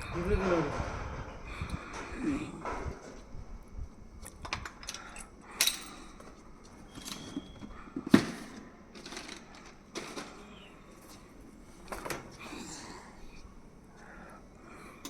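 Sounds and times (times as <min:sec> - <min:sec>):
tools and metal hardware clicking: 0:04.4 - 0:06.3.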